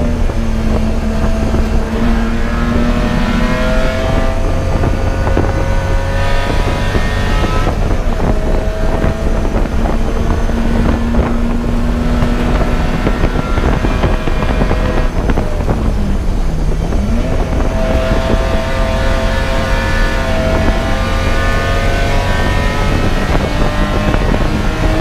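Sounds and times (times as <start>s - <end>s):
race car engine revving: 0.0s - 25.0s.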